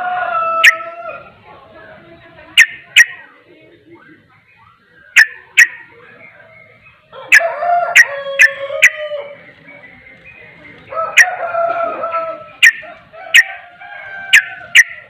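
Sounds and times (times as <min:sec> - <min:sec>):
bird singing chattering phrases: 0:02.0 - 0:11.4, 0:12.3 - 0:13.6, 0:14.3 - 0:15.0
sharp clipped bird notes: 0:02.6 - 0:03.2, 0:04.6 - 0:09.0, 0:12.6 - 0:13.5.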